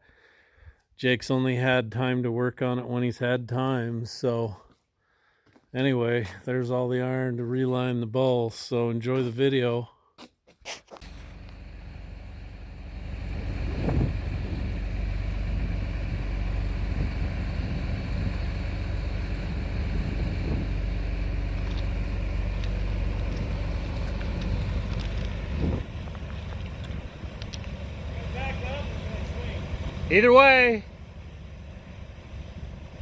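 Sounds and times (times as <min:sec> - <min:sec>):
heavy equipment engine revving: 0:11.0 - 0:33.0.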